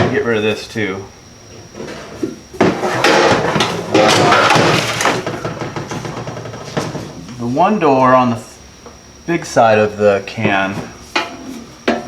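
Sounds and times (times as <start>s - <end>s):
sharp metal knocks: 3.0s - 6.9s.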